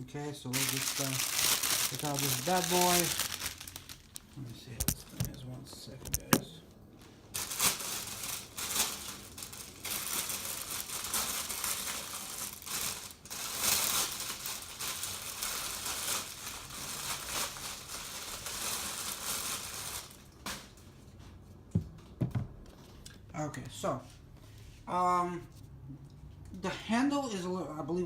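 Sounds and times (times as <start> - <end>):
packaging crinkling and rustling: 0.5 - 6.5, 7.3 - 20.8.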